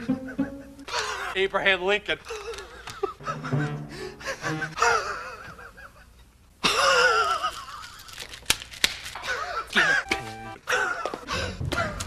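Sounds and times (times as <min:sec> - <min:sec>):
man wheezing gasping laugh: 0:02.3 - 0:08.2, 0:09.2 - 0:12.0.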